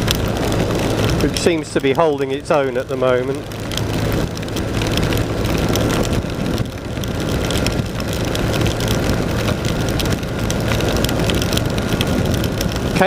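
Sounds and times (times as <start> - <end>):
motorcycle engine running: 0.0 - 13.0
rain clicks: 0.0 - 13.0
wet road noise: 0.0 - 13.0.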